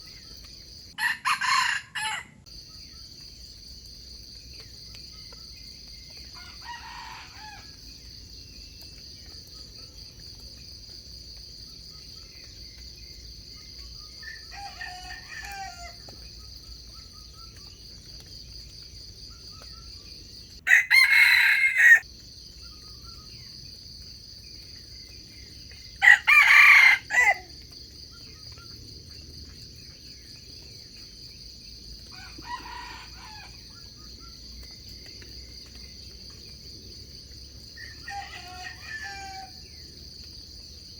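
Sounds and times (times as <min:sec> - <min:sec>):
distant roosters crowing: 0:01.0 - 0:02.4, 0:06.2 - 0:08.0, 0:14.2 - 0:16.2, 0:20.6 - 0:22.1, 0:26.0 - 0:27.6, 0:32.0 - 0:33.8, 0:37.7 - 0:39.8
roosters crowing: 0:01.0 - 0:02.4, 0:06.4 - 0:07.8, 0:14.2 - 0:16.0, 0:20.7 - 0:22.0, 0:26.0 - 0:27.5, 0:32.1 - 0:33.6, 0:37.8 - 0:39.7.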